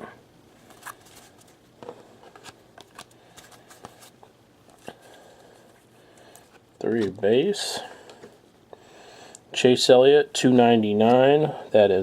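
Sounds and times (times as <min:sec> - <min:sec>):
trading cards flipped through hands: 0:02.3 - 0:04.9.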